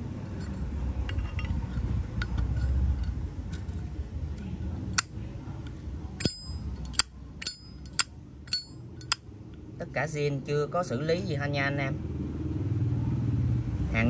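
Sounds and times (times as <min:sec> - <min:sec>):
low background rumble: 0:00.0 - 0:10.9.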